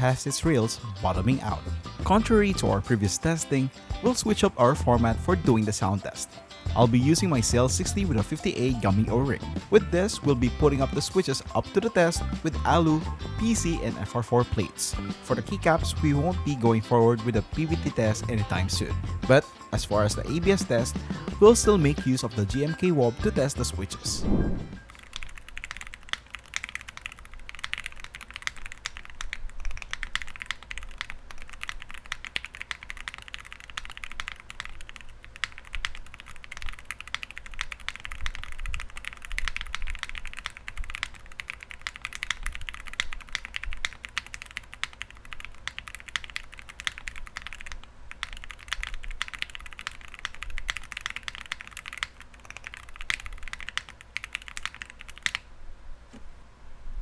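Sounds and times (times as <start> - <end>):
mechanical keyboard typing: 24.8 - 55.4.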